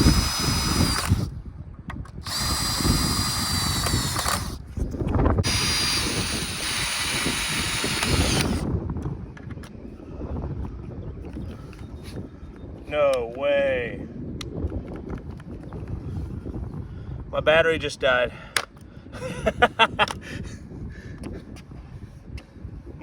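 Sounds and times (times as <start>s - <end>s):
cordless drill driving screws: 0.0s - 1.3s, 2.2s - 4.6s, 5.4s - 8.7s.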